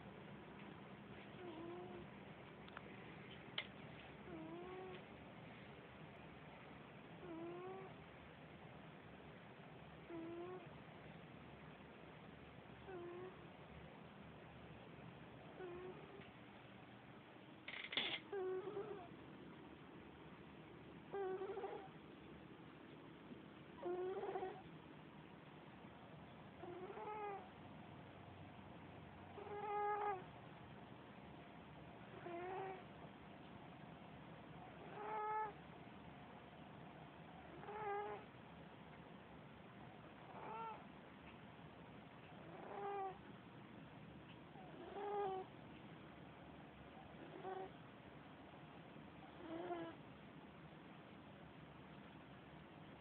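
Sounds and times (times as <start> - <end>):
cat snoring: 1.4 - 2.0, 4.3 - 5.0, 7.2 - 8.0, 10.0 - 10.7, 12.8 - 13.4, 15.6 - 16.2, 18.3 - 19.1, 21.1 - 21.9, 23.8 - 24.6, 26.6 - 27.5, 29.4 - 30.2, 32.1 - 32.9, 34.7 - 35.6, 37.4 - 38.3, 40.2 - 40.8, 42.4 - 43.2, 44.6 - 45.5, 47.0 - 47.8, 49.2 - 50.0.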